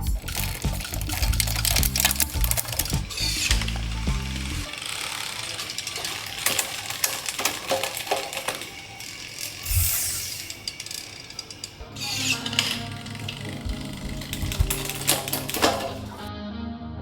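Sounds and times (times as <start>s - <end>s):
ratcheting clicks: 0.0s - 16.3s
background music: 0.0s - 17.0s.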